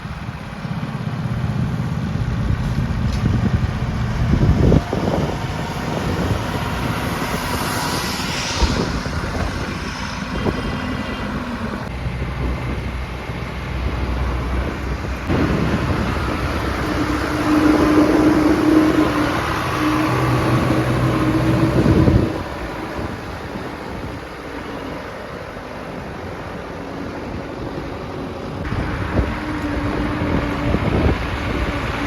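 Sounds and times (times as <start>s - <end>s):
diesel engine running: 0.0s - 32.0s
higher engine tone: 0.0s - 32.0s.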